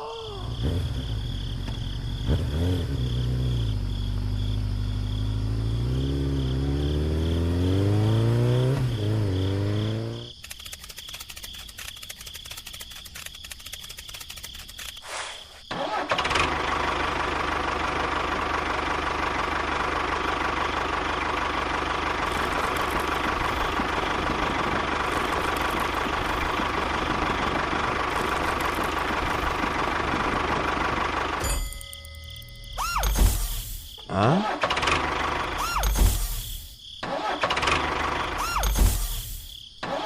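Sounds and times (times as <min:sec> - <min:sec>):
rapid ticking: 0:10.4 - 0:15.0.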